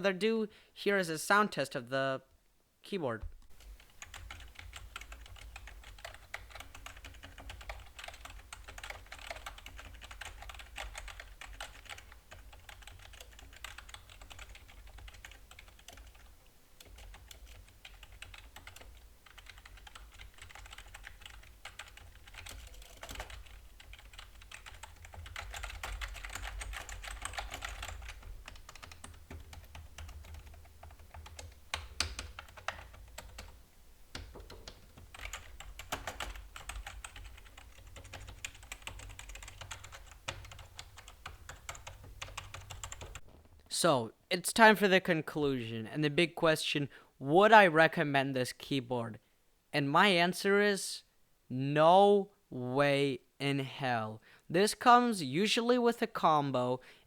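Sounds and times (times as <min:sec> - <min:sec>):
typing on plastic keyboard: 0:03.5 - 0:33.6, 0:34.2 - 0:43.5.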